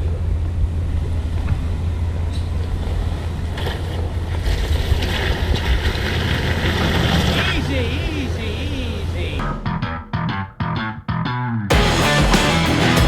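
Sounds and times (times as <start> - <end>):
engine running low: 0.0 - 10.4.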